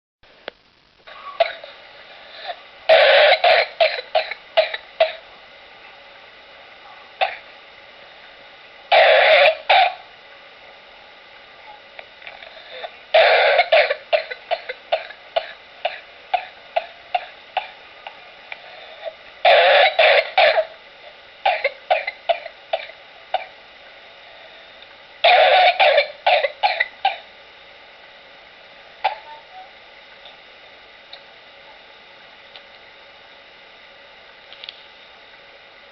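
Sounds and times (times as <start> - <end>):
person coughing in fits: 2.9 - 5.2, 8.9 - 10.0, 13.1 - 17.8, 19.4 - 20.7, 25.2 - 27.3, 29.1 - 29.4.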